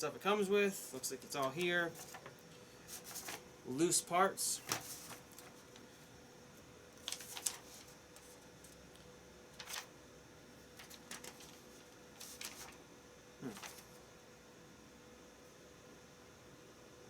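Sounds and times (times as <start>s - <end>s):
faint steady hum: 0.0s - 17.0s
paper pages rustling: 1.1s - 3.4s, 4.6s - 6.0s, 7.0s - 9.9s, 10.6s - 12.8s, 13.4s - 14.0s.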